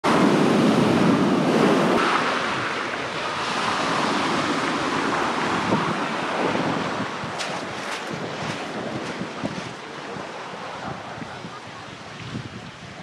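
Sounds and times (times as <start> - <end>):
waves washing onto beach: 0.0 - 13.0
wind on microphone: 0.0 - 13.0.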